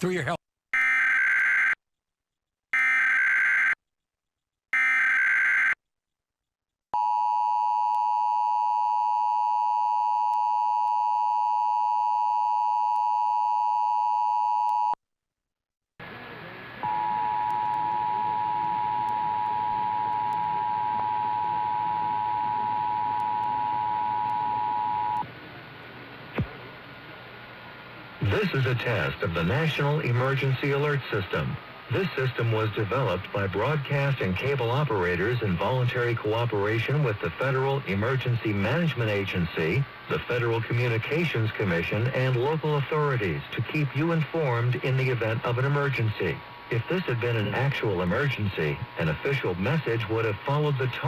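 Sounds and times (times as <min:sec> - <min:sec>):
two-tone attention signal: 0:16.8 - 0:25.2.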